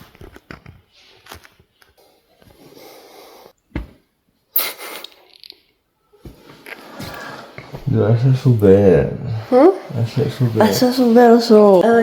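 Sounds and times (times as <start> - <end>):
rustling and handling noises: 0.0 - 2.7.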